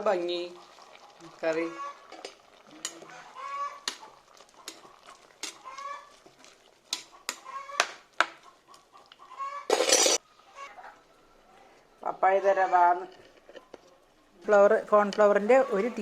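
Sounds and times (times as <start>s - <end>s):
bird calling: 3.1s - 4.2s, 7.0s - 11.0s.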